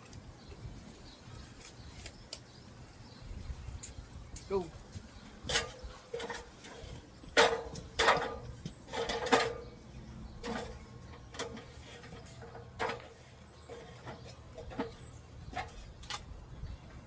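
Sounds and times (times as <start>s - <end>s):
metal knocks and clanks: 5.4s - 16.3s.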